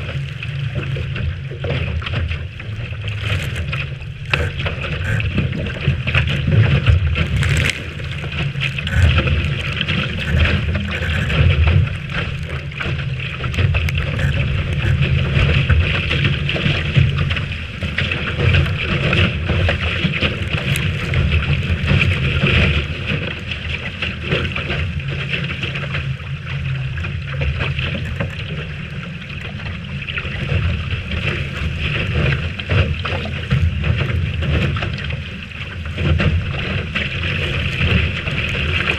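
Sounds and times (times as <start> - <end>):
wind buffeting microphone: 0.0 - 25.1
water rushing past hull: 0.0 - 38.9.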